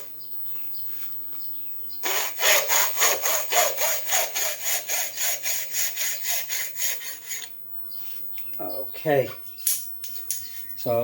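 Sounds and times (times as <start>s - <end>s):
hand saw cutting plastic: 2.0s - 7.5s.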